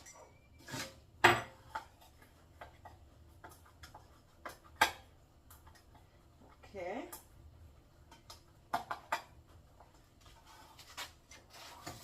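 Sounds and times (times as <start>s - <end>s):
utensils and dishes clattering: 0.0s - 3.6s.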